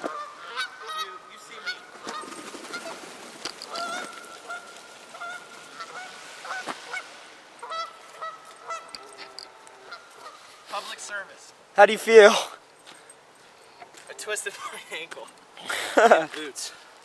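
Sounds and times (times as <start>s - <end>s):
geese honking: 0.0s - 11.2s.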